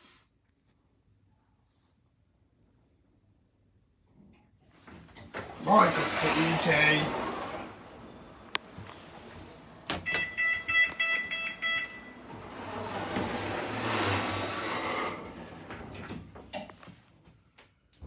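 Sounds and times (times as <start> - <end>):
electronic beeps: 10.0 - 12.2.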